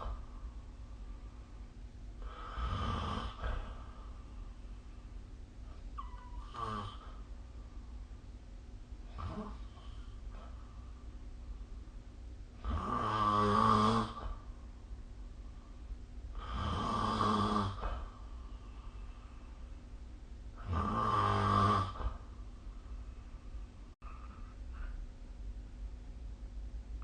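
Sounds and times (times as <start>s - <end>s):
person snoring: 2.2s - 3.9s, 6.5s - 7.2s, 12.6s - 14.4s, 16.4s - 18.1s, 20.6s - 22.2s.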